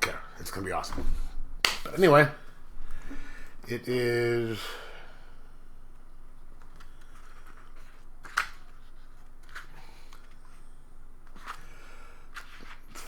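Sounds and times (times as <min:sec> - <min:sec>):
paper pages rustling: 0:05.9 - 0:13.0.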